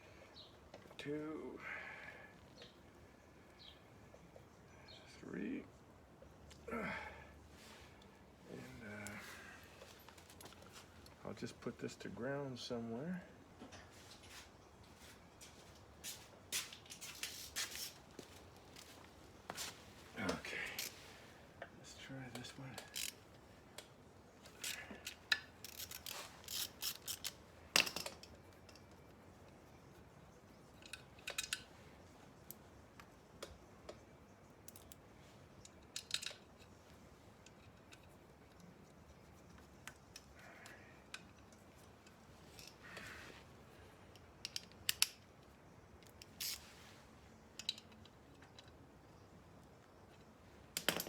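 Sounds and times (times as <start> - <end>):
hands rustling with wiring: 7.5 - 11.2, 13.6 - 51.0
small parts clicking and rattling: 22.3 - 29.6, 30.6 - 31.8, 34.6 - 43.1, 44.0 - 46.8, 47.5 - 51.0.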